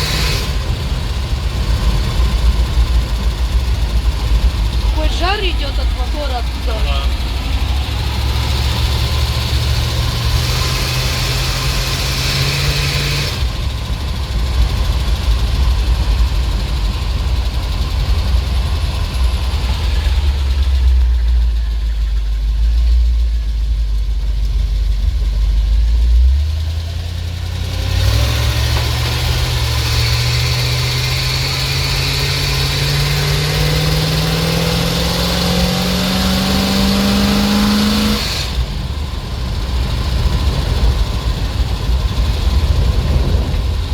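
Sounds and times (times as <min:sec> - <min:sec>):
truck engine running under load: 0:00.0 - 0:43.9.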